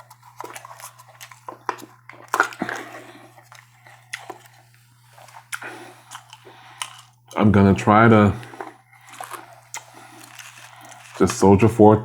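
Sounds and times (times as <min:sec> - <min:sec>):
chewing and biting food: 0:00.0 - 0:07.5, 0:08.3 - 0:11.6.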